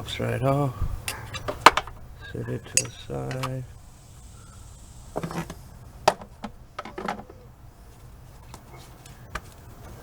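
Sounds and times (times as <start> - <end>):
hand tools clicking and knocking: 2.6 - 3.6.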